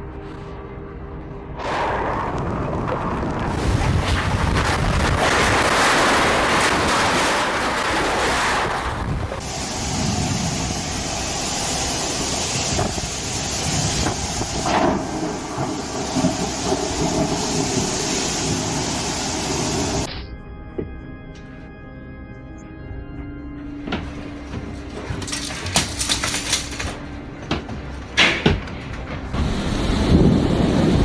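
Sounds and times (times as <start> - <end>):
wind: 0.0 - 20.1, 23.7 - 31.0
rain: 1.6 - 20.1, 29.3 - 31.0.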